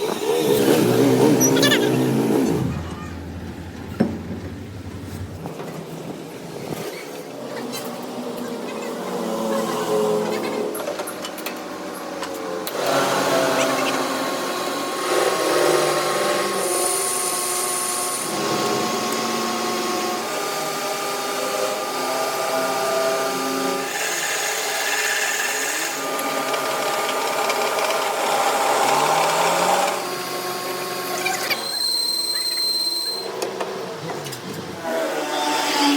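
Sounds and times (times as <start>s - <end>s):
power tool humming: 12.4s - 35.9s.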